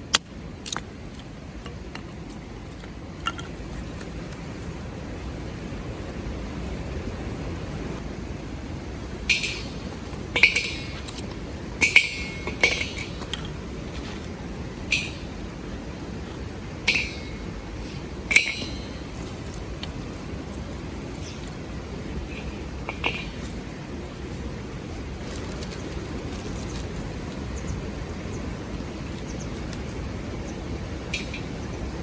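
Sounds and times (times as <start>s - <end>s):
steady low rush: 0.0s - 32.0s
metal cookware clinking: 9.3s - 9.8s, 10.4s - 11.2s, 11.8s - 13.6s, 16.8s - 17.4s, 18.3s - 19.4s.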